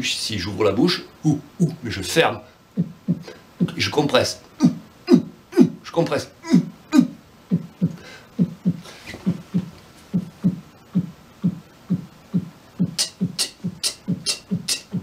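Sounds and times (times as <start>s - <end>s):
vocal imitation of heartbeat: 1.2s - 1.9s, 2.7s - 15.0s.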